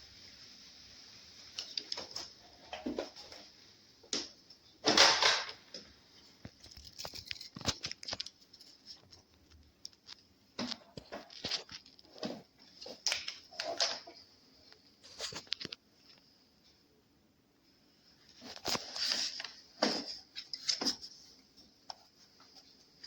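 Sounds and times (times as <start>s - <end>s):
objects being handled: 1.5s - 16.3s, 18.3s - 23.0s
rustling scrape: 18.3s - 21.4s.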